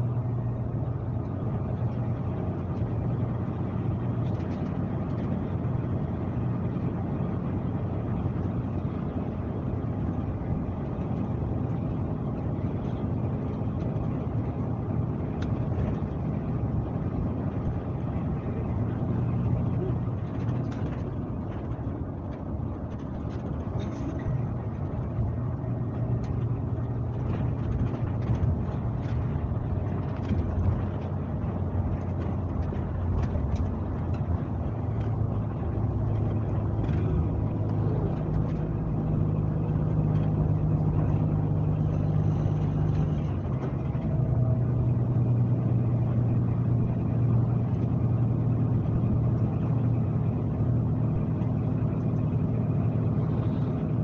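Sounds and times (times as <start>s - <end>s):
bus engine running: 0.0s - 54.0s
tyre and road noise: 0.0s - 54.0s
light rattles: 10.9s - 54.0s.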